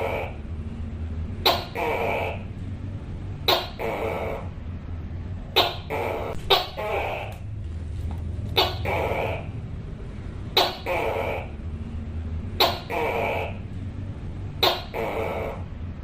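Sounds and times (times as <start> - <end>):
gecko calling: 0.0 - 0.5, 1.4 - 2.6, 3.4 - 4.6, 5.5 - 7.6, 8.5 - 9.6, 10.5 - 11.6, 12.5 - 13.7, 14.6 - 15.8
low hum: 0.0 - 16.0.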